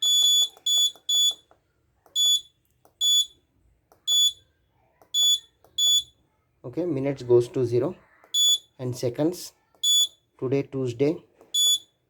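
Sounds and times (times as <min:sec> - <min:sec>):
short high-pitched buzzer beeps: 0:00.0 - 0:01.4, 0:09.8 - 0:10.2, 0:11.6 - 0:11.9
push buttons clicking: 0:00.0 - 0:03.2.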